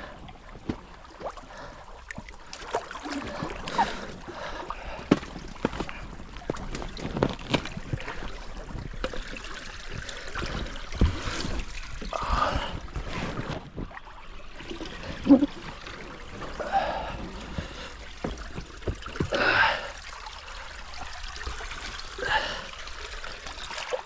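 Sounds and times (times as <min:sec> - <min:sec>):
stream trickling: 0:00.0 - 0:24.0.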